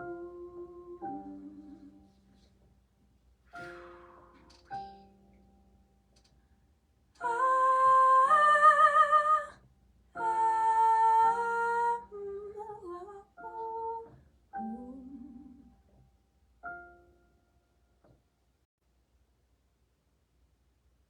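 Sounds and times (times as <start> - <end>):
wordless singing: 7.2 - 9.6.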